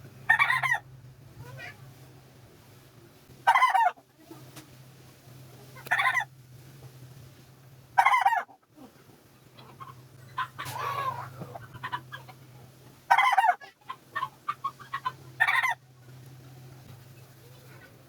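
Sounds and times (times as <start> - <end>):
steady low hum: 0.0 - 18.0
chicken squawking: 0.3 - 0.8, 3.5 - 4.0, 5.9 - 6.3, 8.0 - 8.7, 9.6 - 12.4, 13.1 - 15.8.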